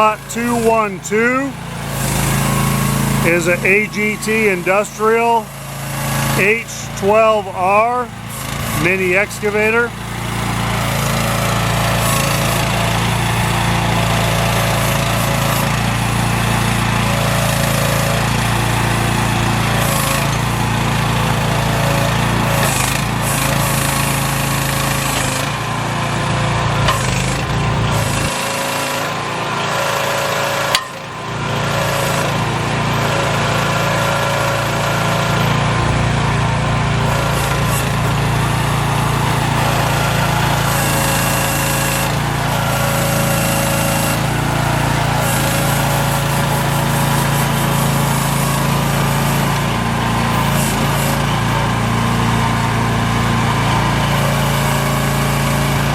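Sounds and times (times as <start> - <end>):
small excavator engine running: 0.0 - 55.9.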